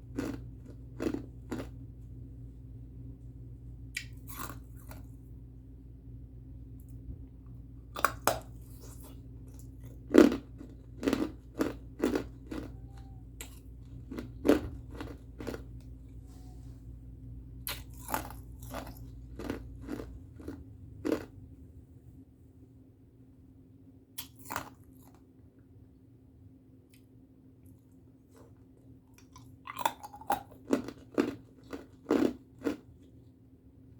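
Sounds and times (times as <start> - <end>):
person crunching ice: 14.1 - 15.6.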